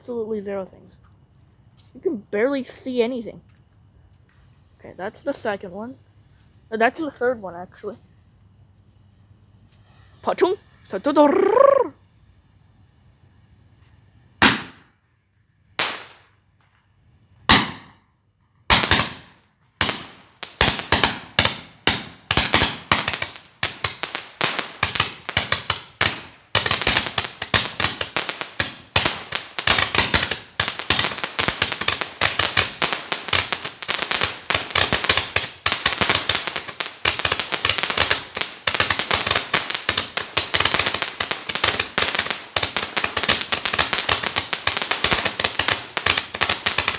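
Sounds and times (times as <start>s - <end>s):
firecrackers banging: 14.4s - 14.9s, 17.4s - 18.0s, 18.7s - 46.9s.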